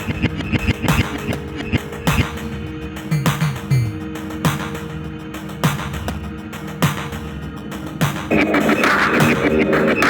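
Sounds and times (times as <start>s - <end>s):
electronic music: 3.0s - 4.6s
deep kick drum: 3.1s - 4.0s.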